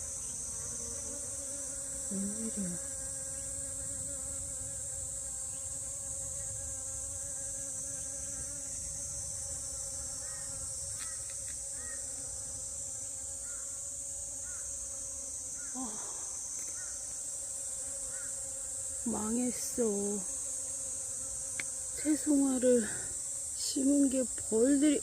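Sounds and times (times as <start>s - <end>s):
bee buzzing close by: 0.0s - 25.0s
bees buzzing: 0.0s - 25.0s.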